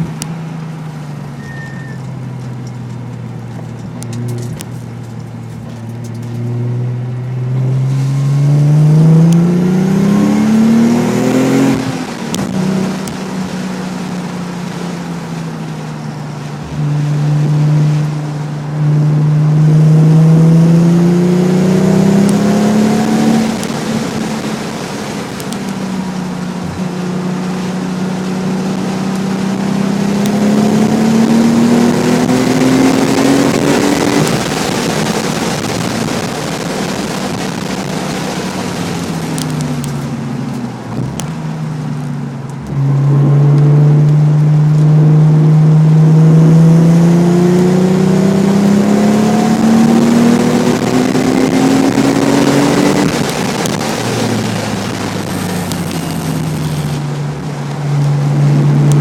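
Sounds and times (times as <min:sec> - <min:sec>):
car engine accelerating: 0:00.0 - 0:59.0.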